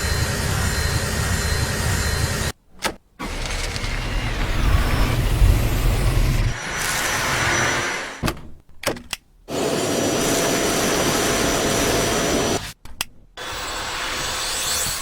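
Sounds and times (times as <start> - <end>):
stick vacuum running with whine: 3.2 - 8.2.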